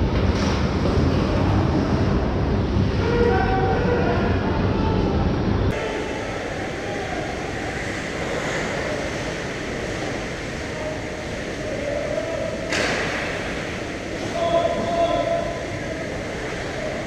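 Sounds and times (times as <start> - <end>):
ice rink rumble and hiss: 0.0 - 17.0.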